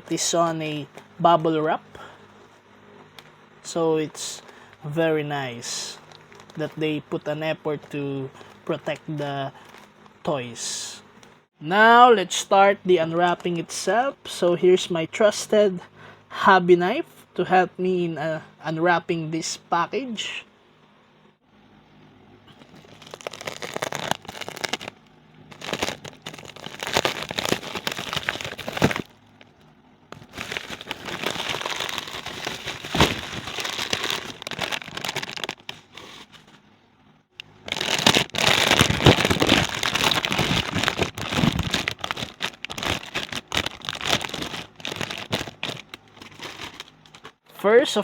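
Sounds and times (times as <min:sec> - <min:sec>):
plastic packaging crinkling: 0:05.5 - 0:10.2, 0:22.5 - 0:36.6, 0:37.4 - 0:47.4.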